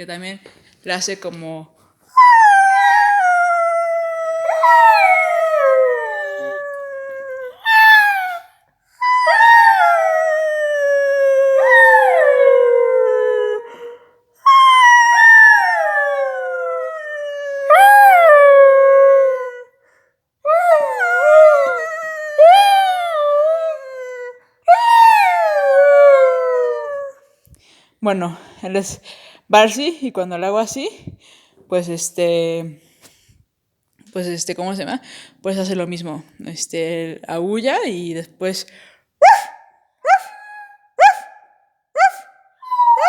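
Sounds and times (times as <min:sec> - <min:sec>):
dog howling: 0:02.2 - 0:13.8, 0:42.0 - 0:43.0.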